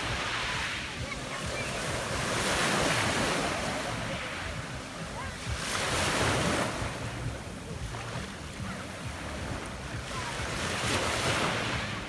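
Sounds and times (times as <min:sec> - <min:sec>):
waves washing onto pebble beach: 0:00.0 - 0:07.2.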